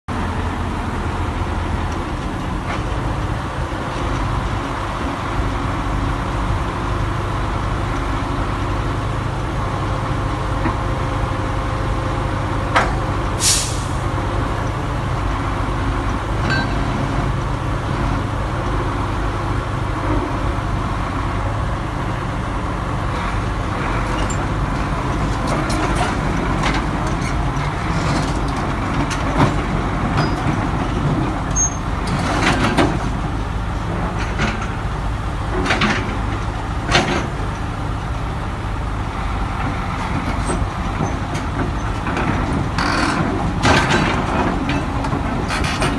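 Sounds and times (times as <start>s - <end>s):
excavator diesel engine running: 0.1s - 45.9s
air hiss: 13.4s - 14.1s
metal knocks and clanks: 40.2s - 45.9s.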